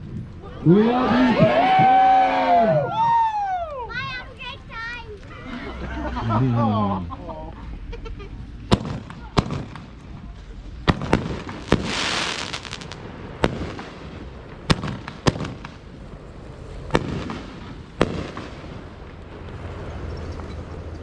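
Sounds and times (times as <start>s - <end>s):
firework hissing crackle: 8.3s - 21.0s
fireworks bangs: 8.6s - 20.8s.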